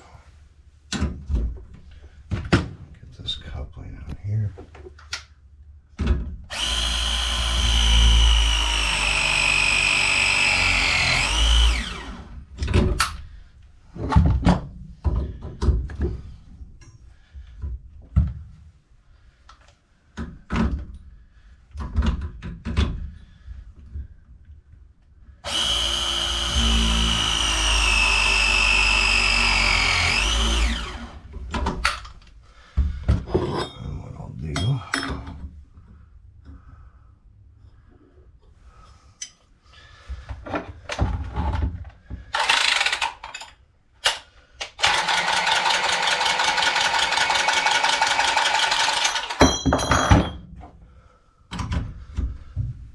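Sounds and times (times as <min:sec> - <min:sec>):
pipe press tool motor whine: 0:06.5 - 0:12.4, 0:25.4 - 0:31.3, 0:44.8 - 0:49.4.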